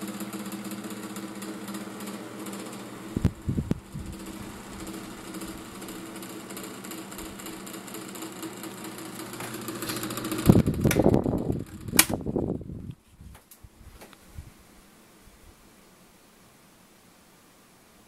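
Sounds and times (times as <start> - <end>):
table fan motor rattling: 0.0 - 12.7
sharp clicks: 11.9 - 12.2.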